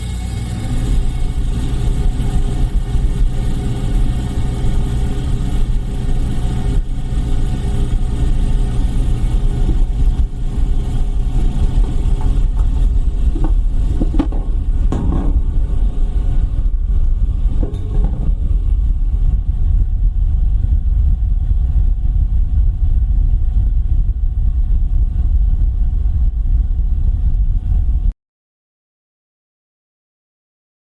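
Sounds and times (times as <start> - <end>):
deep hollow rumble: 0.0 - 28.2.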